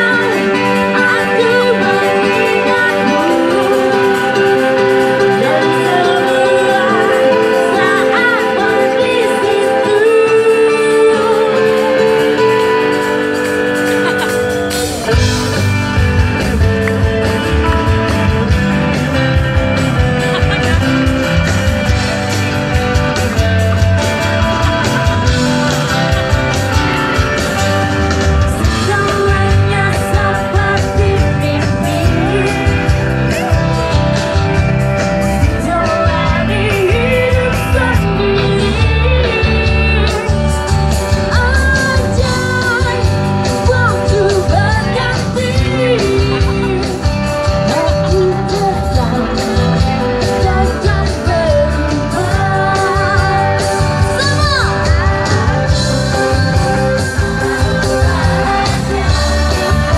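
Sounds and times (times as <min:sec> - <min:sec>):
live band playing pop-rock: 0:00.0 - 0:59.9
person singing lead vocal: 0:00.0 - 0:59.9.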